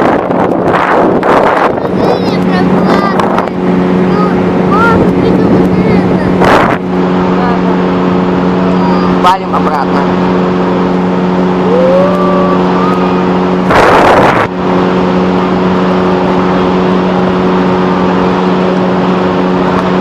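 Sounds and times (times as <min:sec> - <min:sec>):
outboard engine running: 0:00.0 - 0:20.0
loud rushing burst: 0:12.3 - 0:19.7.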